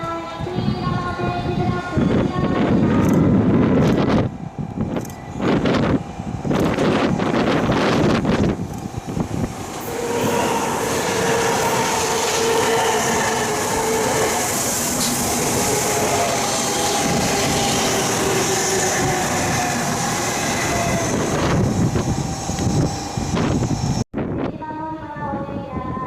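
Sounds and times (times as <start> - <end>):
train rolling past: 0.0 - 24.0
whining tones: 3.4 - 24.0.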